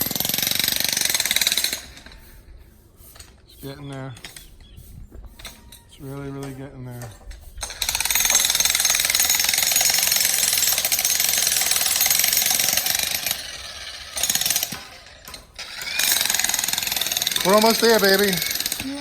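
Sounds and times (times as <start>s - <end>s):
jackhammer breaking rock: 7.6s - 19.0s.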